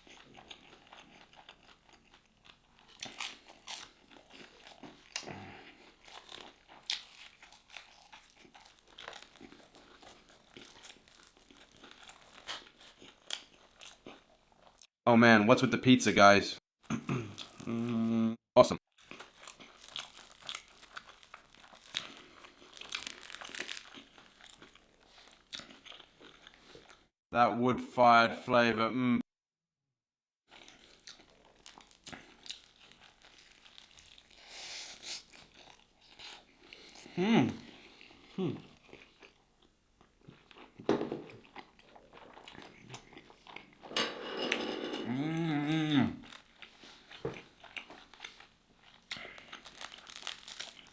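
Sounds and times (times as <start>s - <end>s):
chewing crunchy food: 0.0s - 14.9s, 19.0s - 27.1s, 30.5s - 43.9s, 45.1s - 50.9s
person humming mmm: 17.0s - 18.4s, 37.1s - 38.8s, 45.0s - 46.3s.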